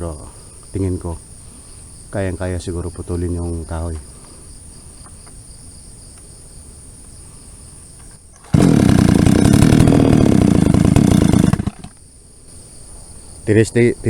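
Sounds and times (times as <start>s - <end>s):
chainsaw engine running: 8.4s - 12.0s.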